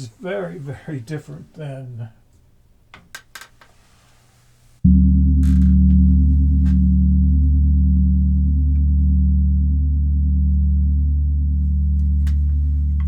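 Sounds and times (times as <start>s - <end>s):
large gong ringing: 4.9s - 13.0s.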